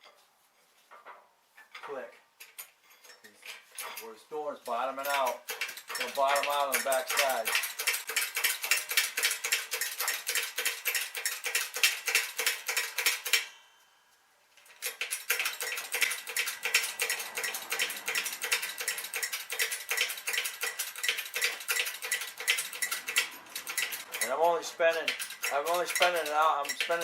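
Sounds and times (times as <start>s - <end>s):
ratchet wrench clicking: 4.7s - 13.5s, 14.8s - 27.0s.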